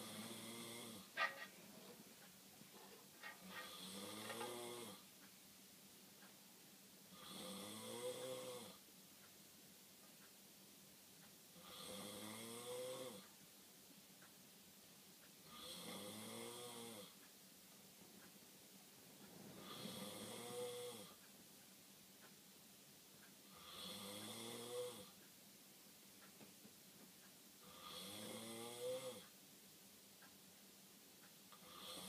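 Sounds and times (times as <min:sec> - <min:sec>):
man snoring: 0:00.0 - 0:01.1, 0:03.5 - 0:05.0, 0:07.1 - 0:08.8, 0:11.6 - 0:13.2, 0:15.5 - 0:17.2, 0:19.6 - 0:21.2, 0:23.5 - 0:25.2, 0:27.6 - 0:29.2, 0:31.6 - 0:32.0.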